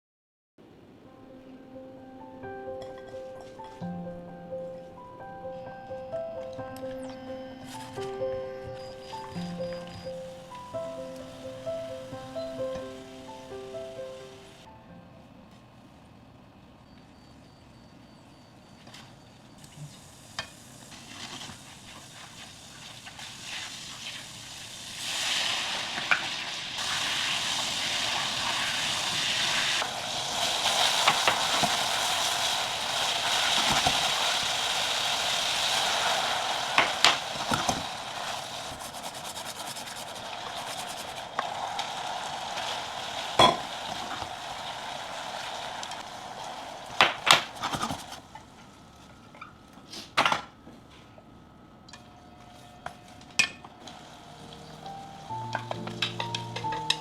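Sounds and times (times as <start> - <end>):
food sizzling in a frying pan: 7.5 - 14.7, 19.6 - 48.4, 53.8 - 57.0.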